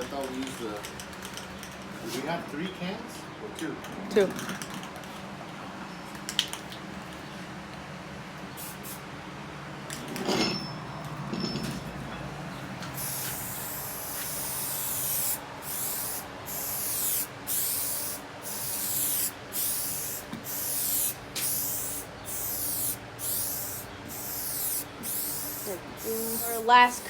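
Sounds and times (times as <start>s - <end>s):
spray paint can hissing: 8.6s - 9.0s, 13.0s - 27.0s.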